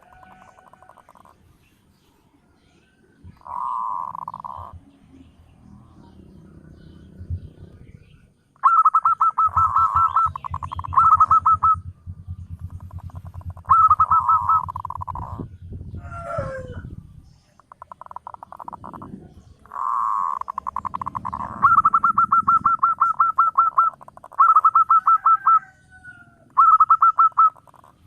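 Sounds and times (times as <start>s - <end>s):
doves trilled cooing: 0.0s - 1.6s, 2.9s - 28.0s
low rapid pulsing: 3.2s - 25.6s.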